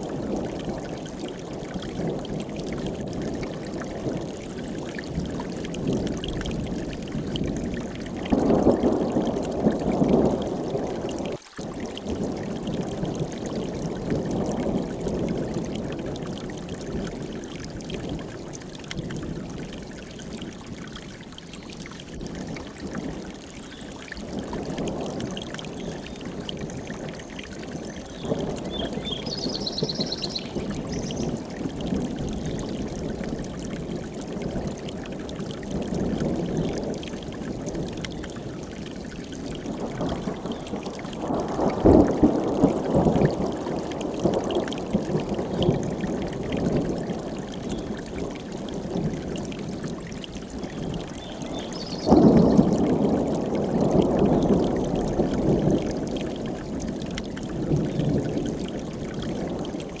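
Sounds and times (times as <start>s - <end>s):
mountain stream rushing: 0.0s - 1.4s, 20.0s - 32.1s
bird chirping: 28.0s - 31.4s, 51.2s - 52.5s.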